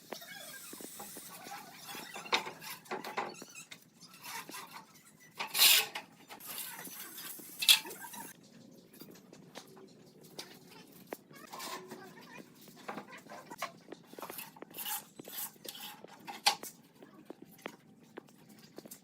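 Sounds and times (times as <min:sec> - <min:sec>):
scraping rasp: 0:04.1 - 0:08.4, 0:14.2 - 0:16.6.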